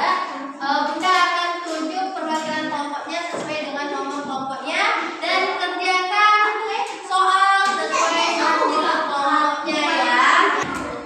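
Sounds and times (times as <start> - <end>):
children singing together: 6.4 - 11.0.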